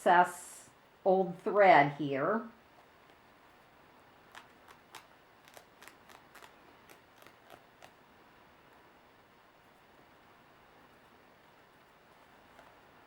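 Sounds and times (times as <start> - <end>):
small scissors snipping: 4.3 - 8.0.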